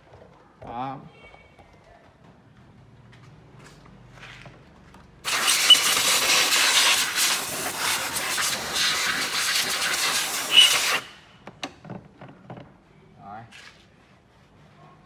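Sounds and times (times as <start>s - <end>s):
loud steady hiss: 5.2s - 11.4s.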